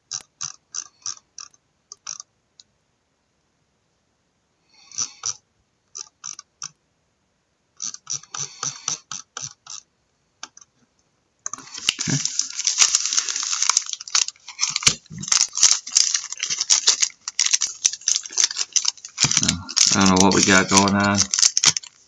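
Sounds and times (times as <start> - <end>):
pack wrapper crinkling and tearing: 11.6 - 22.0
wrapper and cardboard crackling: 11.6 - 22.0.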